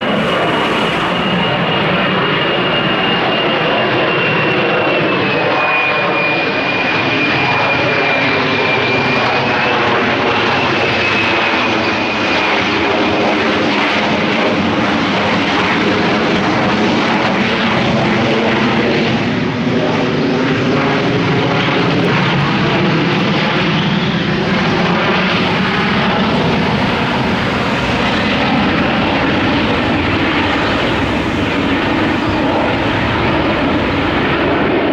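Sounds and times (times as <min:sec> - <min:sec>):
high-pitched jet whine: 0:00.0 - 0:12.8, 0:21.6 - 0:34.9
jet roar overhead: 0:00.0 - 0:34.9.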